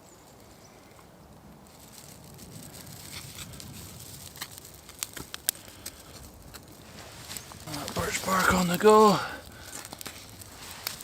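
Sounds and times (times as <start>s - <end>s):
fire crackles: 0.0s - 11.0s
small fire burning: 0.0s - 11.0s.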